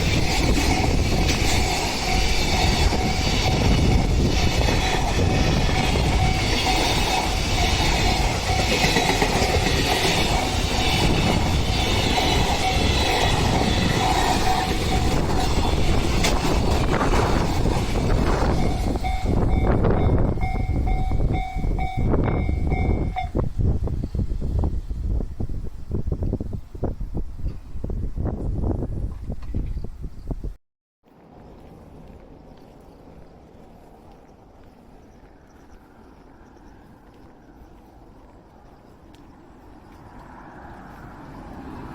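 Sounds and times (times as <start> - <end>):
train wheels on rails: 0.0 - 26.4, 31.1 - 41.9
level crossing warning bell: 0.1 - 16.2, 17.7 - 23.4.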